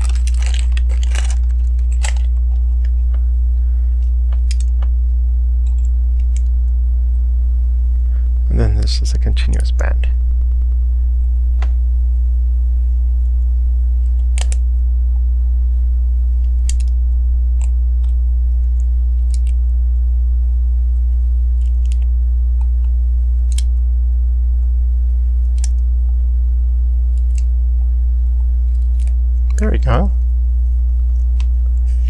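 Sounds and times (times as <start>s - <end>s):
plastic pieces clicking: 0.0s - 2.9s, 4.3s - 4.9s, 23.5s - 23.7s
loud low hum: 0.0s - 32.0s.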